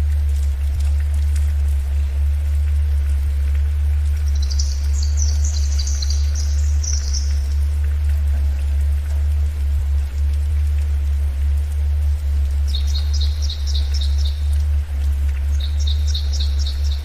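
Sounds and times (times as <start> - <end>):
rain pattering: 0.0 - 17.0
steady low tone: 0.0 - 17.0
bird twittering: 4.2 - 7.6, 12.7 - 14.5, 15.5 - 17.0.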